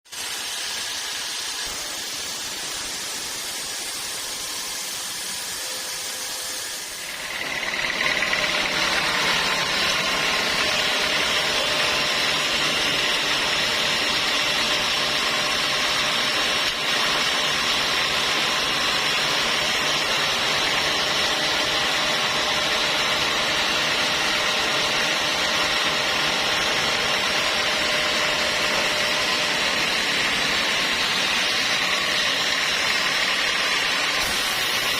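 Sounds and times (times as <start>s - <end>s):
sawmill saw running: 0.0s - 34.9s.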